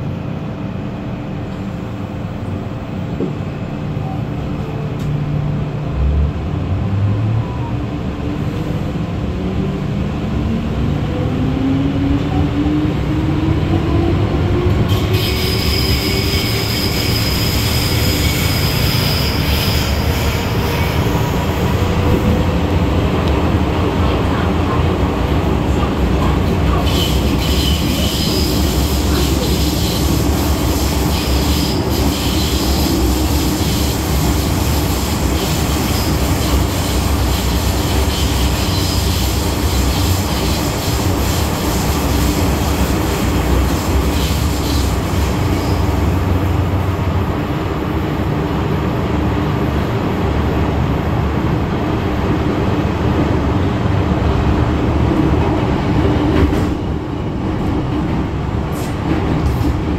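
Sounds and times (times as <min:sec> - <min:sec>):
wheels rumbling on rail: 0:00.0 - 0:59.9
high-pitched wheel squeal: 0:14.9 - 0:21.1.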